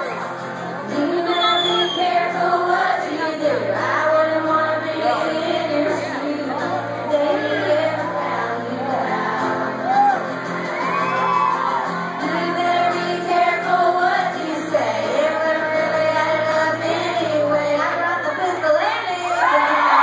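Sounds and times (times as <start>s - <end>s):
crowd shouting and whooping: 0.0s - 2.4s, 6.3s - 14.3s, 18.2s - 20.0s
live country band: 0.0s - 20.0s
woman singing: 0.8s - 10.3s, 12.1s - 20.0s.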